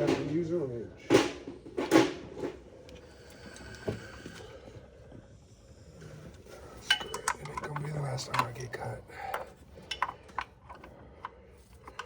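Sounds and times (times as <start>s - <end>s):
hand tools scraping and clattering: 6.1s - 12.0s.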